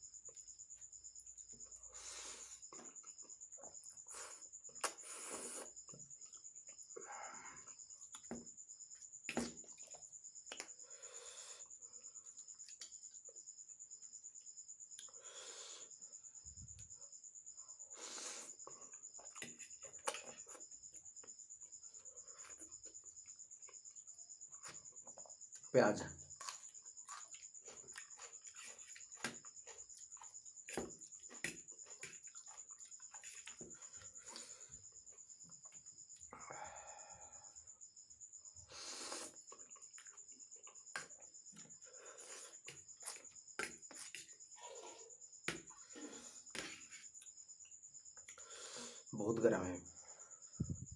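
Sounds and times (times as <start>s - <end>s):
cricket chirping trill: 0.0s - 50.9s
chewing and slurping: 18.1s - 20.6s, 26.3s - 35.8s, 38.7s - 47.0s.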